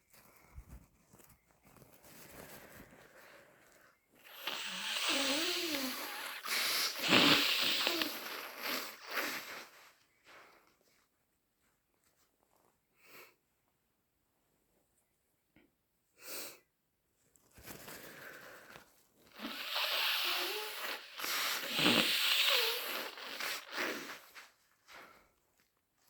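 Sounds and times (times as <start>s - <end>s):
person blowing congested nose: 4.2s - 9.8s, 17.9s - 24.5s
person sniffing: 4.2s - 9.9s, 17.9s - 25.1s.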